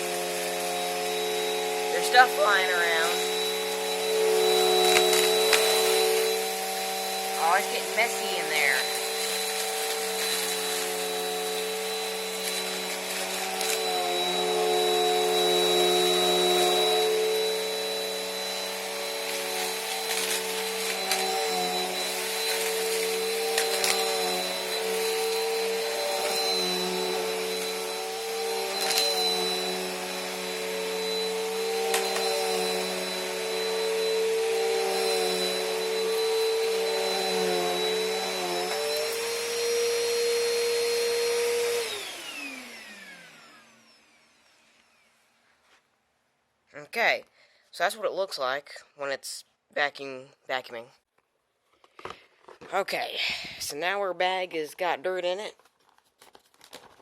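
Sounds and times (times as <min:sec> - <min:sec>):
vacuum cleaner motor hum: 0:00.0 - 0:45.3.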